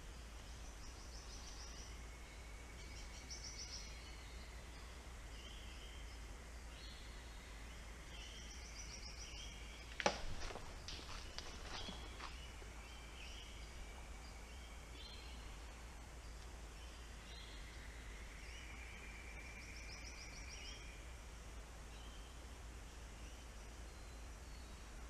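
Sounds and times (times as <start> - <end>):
steady hiss: 0.0 - 25.0
bird calls: 8.2 - 15.5.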